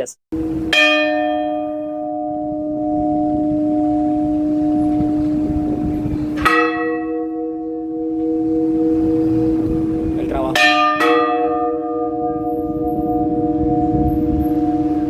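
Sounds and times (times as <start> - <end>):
church bell tolling: 0.4 - 15.0.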